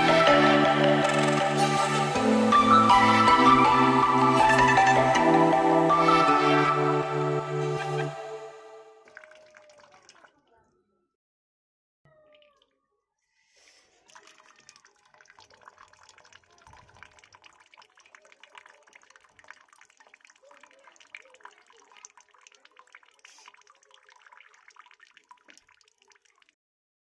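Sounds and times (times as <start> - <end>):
water trickling and dripping: 0.0 - 8.1, 8.9 - 10.6, 12.1 - 13.0, 13.6 - 26.6.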